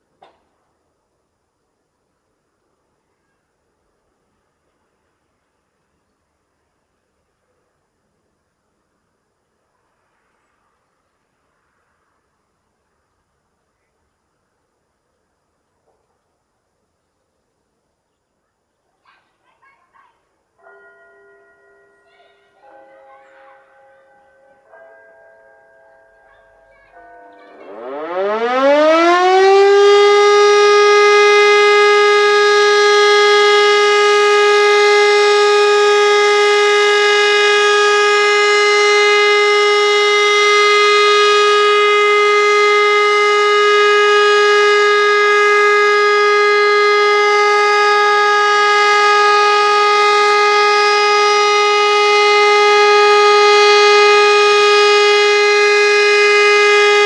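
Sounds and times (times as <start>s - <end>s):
siren steady tone: 22.6s - 57.0s.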